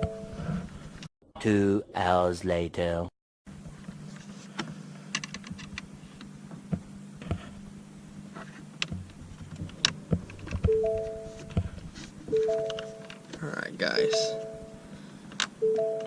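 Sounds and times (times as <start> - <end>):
steady low hum: 1.6 - 16.0
short held tones: 10.7 - 11.6, 12.3 - 13.3, 13.9 - 15.0.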